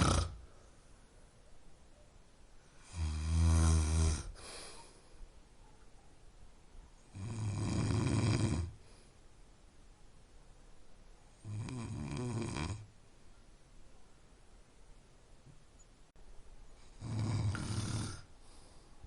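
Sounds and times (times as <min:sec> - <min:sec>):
low buzzy snoring: 0:00.0 - 0:00.5, 0:02.8 - 0:04.4, 0:07.1 - 0:08.9, 0:11.4 - 0:12.9, 0:16.9 - 0:18.3
breathy hiss: 0:02.6 - 0:05.3, 0:16.8 - 0:19.0.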